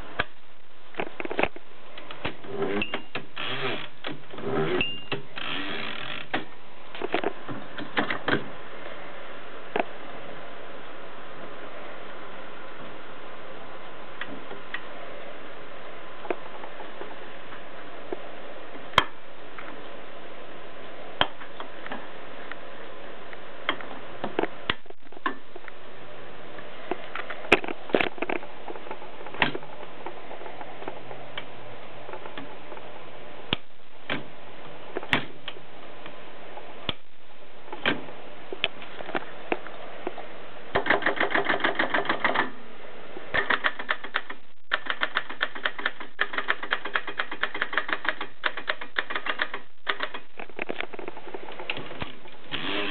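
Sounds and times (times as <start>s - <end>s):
typewriter clacking: 40.8s - 42.5s, 43.4s - 50.3s.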